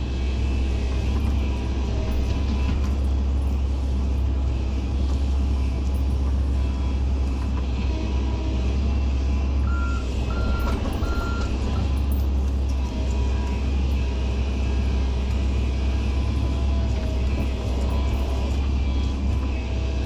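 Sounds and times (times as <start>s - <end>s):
diesel engine low drone: 0.0s - 20.0s
reversing alarm beeps: 9.6s - 11.9s.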